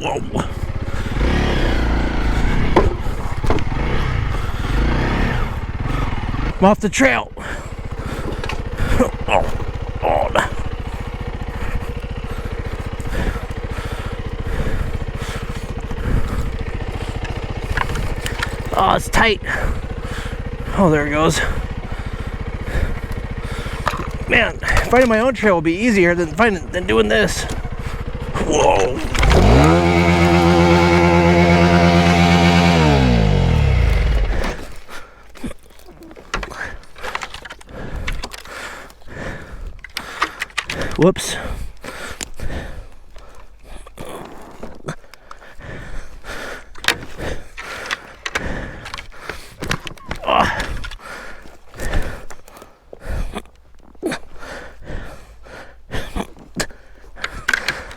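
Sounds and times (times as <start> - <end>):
motorcycle engine running: 0.1 - 34.9.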